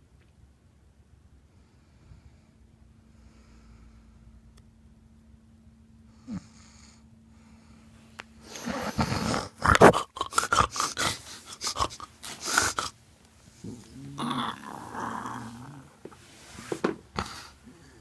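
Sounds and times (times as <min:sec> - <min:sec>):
person snoring: 0:06.2 - 0:07.0, 0:08.4 - 0:13.0, 0:13.6 - 0:18.0.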